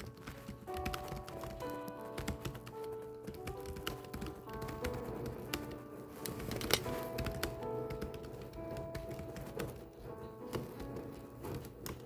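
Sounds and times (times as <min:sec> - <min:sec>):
background music with held notes: 0:00.0 - 0:12.0
typewriter keys clacking: 0:00.0 - 0:12.0.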